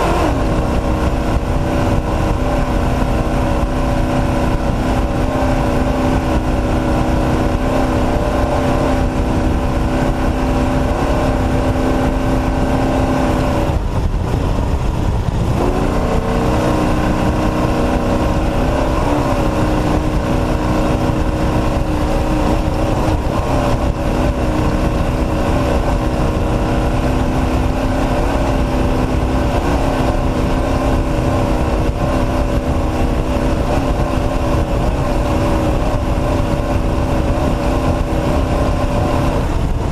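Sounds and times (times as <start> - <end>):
truck engine running hard: 0.0 - 39.9.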